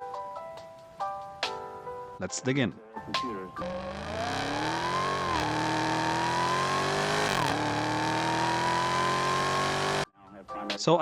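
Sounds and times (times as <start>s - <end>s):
car engine accelerating: 3.6s - 10.0s.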